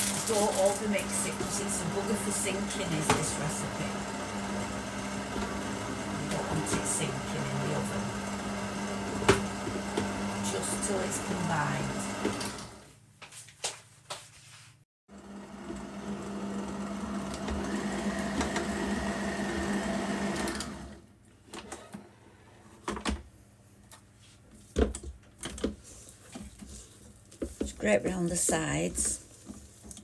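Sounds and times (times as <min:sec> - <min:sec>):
electric mixer motor running: 0:00.0 - 0:12.8, 0:15.1 - 0:21.0.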